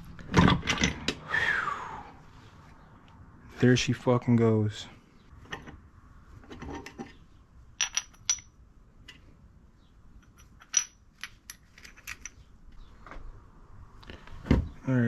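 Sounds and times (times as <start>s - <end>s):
metallic clinks and taps: 7.8s - 8.5s, 10.2s - 12.4s.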